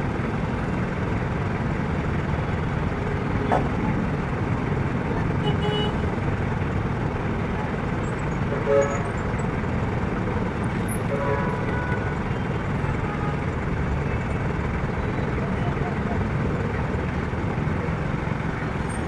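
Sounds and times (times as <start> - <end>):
passing cars traffic: 0.0 - 19.0
car horn toot: 5.4 - 6.0, 8.6 - 9.1, 11.0 - 13.4.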